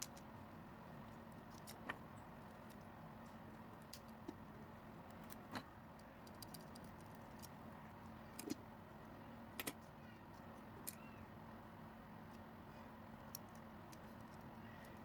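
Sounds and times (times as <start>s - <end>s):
steady low hum: 0.0s - 15.0s
small clicks and taps: 5.1s - 7.6s, 9.6s - 9.9s.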